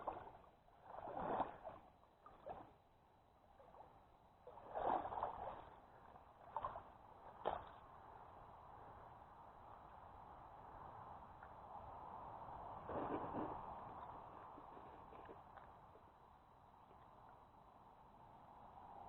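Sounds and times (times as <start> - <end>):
water sloshing and splashing: 0.0 - 7.8, 12.8 - 15.8
faint wash of water: 0.0 - 8.5, 12.6 - 17.4.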